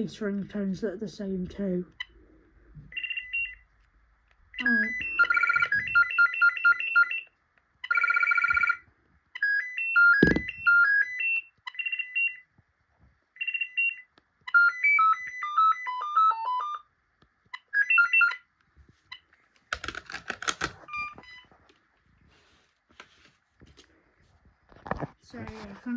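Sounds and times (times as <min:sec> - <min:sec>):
phone ringtone melodies: 0:04.6 - 0:12.4, 0:13.4 - 0:16.9, 0:17.6 - 0:18.5.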